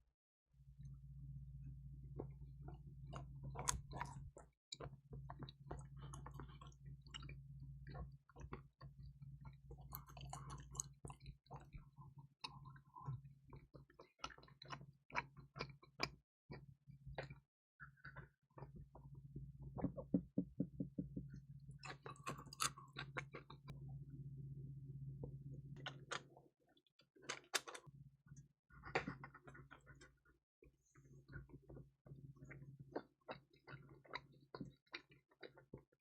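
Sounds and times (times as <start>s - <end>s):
low steady hum: 0.6s - 13.6s, 17.9s - 26.4s
chewing crispy pizza: 2.1s - 19.4s, 21.7s - 23.8s, 25.2s - 36.0s.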